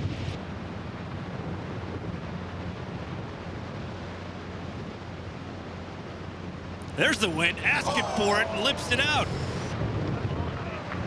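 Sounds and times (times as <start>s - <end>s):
gusting wind on microphone: 8.9s - 11.0s.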